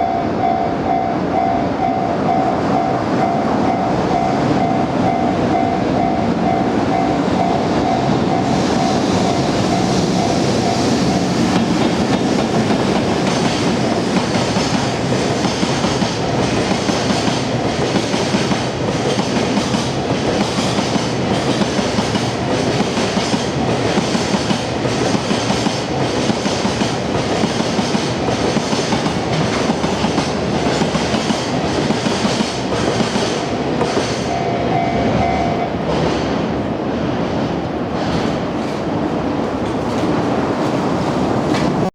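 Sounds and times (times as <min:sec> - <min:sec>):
crossing warning bell dinging: 0:00.0 - 0:14.5, 0:34.2 - 0:35.9
freight train wheels clacking: 0:00.9 - 0:41.9.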